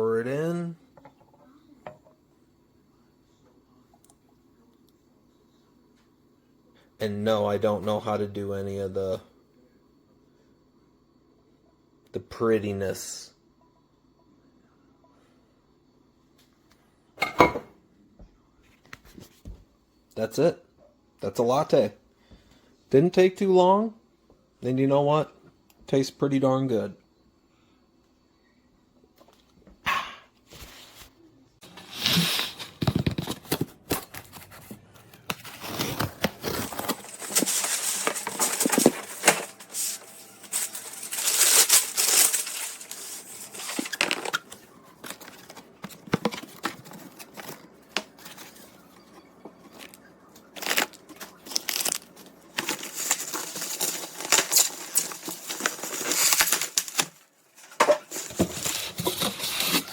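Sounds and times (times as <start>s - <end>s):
packaging crinkling and tearing: 33.4s - 48.7s, 49.7s - 59.9s.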